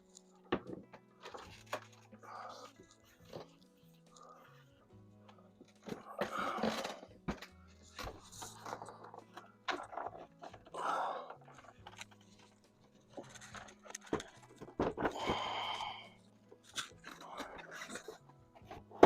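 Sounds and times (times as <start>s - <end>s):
person breathing heavily: 5.4s - 7.1s, 10.7s - 11.8s, 15.0s - 16.2s.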